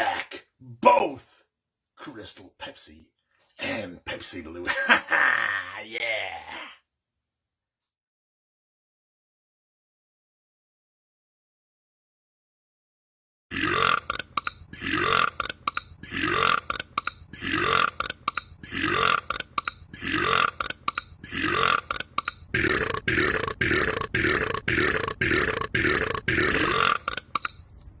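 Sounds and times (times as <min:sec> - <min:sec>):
man burping loudly: 0:13.5 - 0:27.6.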